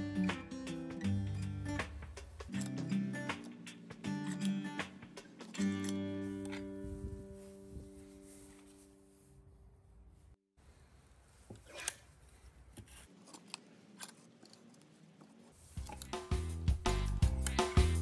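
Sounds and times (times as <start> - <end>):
faint clicks and handling sounds: 11.3 - 16.3.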